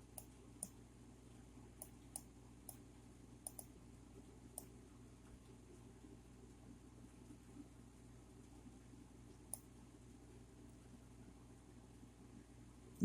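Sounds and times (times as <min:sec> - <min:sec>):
faint low hum: 0:00.0 - 0:13.0
computer mouse clicking: 0:03.4 - 0:03.7.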